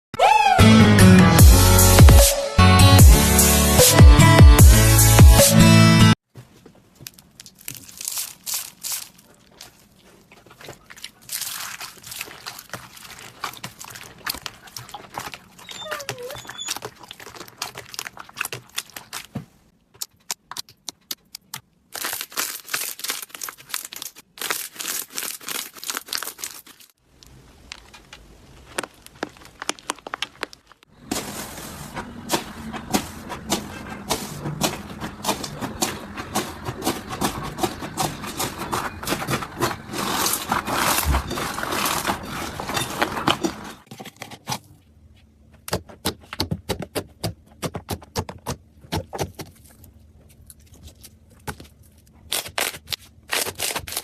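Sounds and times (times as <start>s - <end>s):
slime crackling and popping: 7.2s - 9.9s, 20.1s - 30.9s.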